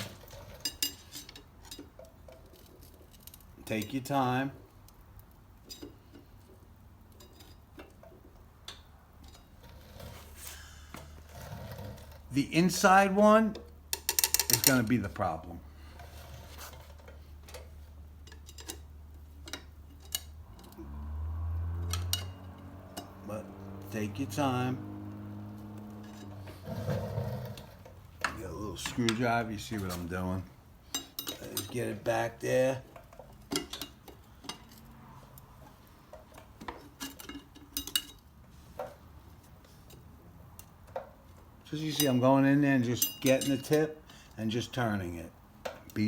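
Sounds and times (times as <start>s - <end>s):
metallic clicks of hand tools: 13.9s - 14.9s.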